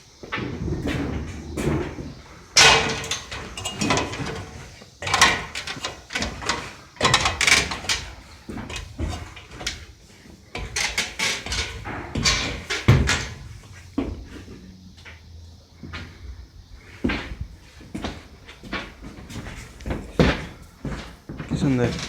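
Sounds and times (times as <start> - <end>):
objects scraping and knocking: 0.1 - 15.3.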